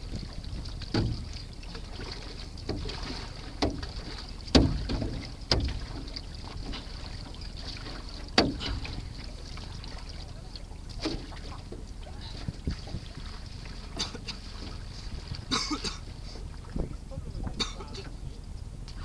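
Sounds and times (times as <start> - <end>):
wind noise on microphone: 0.0 - 1.4, 12.4 - 13.4, 14.9 - 19.0
paddle splashing water: 0.0 - 18.6.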